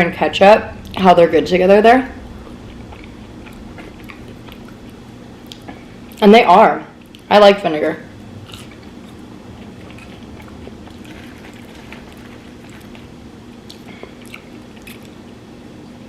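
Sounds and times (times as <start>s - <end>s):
steady low hum: 0.0s - 16.0s
person chewing food: 2.3s - 6.2s, 7.0s - 7.3s, 8.4s - 16.0s.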